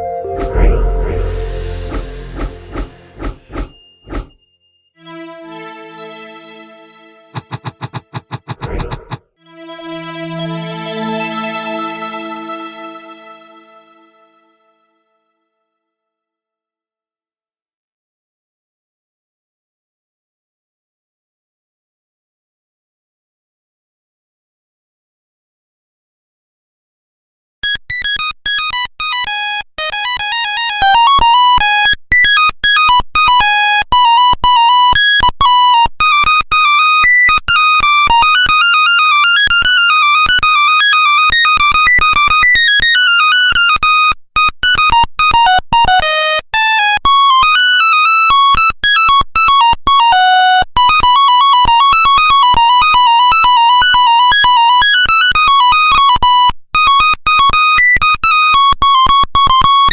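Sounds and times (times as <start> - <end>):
monophonic ringtone melodies: 0.0 - 4.1.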